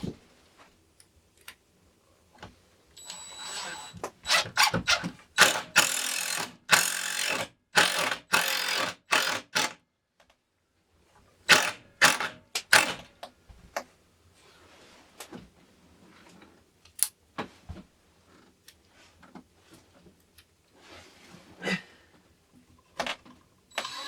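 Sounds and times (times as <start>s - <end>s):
screws driven into wood: 3.4s - 9.8s, 11.5s - 13.0s.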